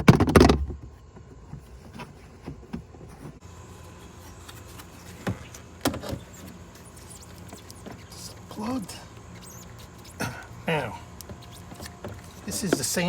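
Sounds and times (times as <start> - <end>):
steady low hum: 0.0 - 13.0
hands handling plastic parts: 3.9 - 13.0.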